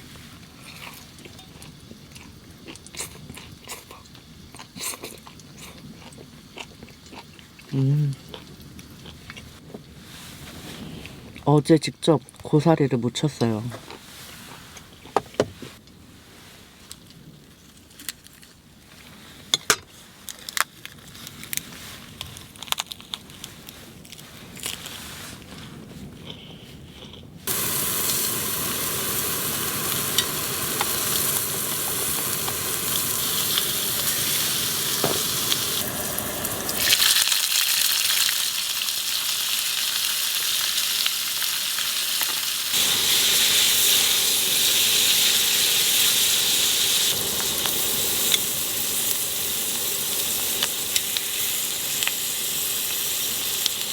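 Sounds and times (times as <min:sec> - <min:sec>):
food sizzling in a pan: 0:27.5 - 0:53.9.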